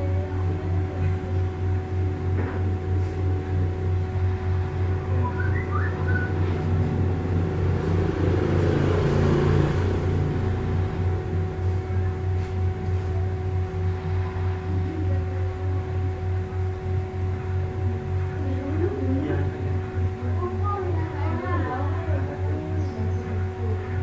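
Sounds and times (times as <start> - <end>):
low pulsing beat: 1.5 - 8.3
held steady tones: 3.3 - 8.2.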